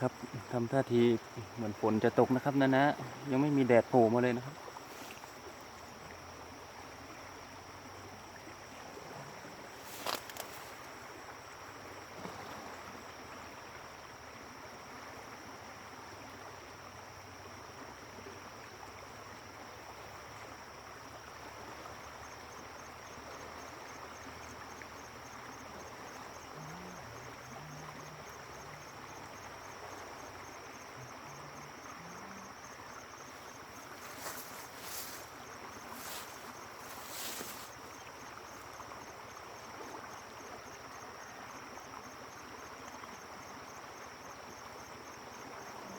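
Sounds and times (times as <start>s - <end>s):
fast-flowing river water: 0.0s - 45.9s
high insect trill: 0.0s - 45.9s
loud high insect buzzes: 30.7s - 37.9s.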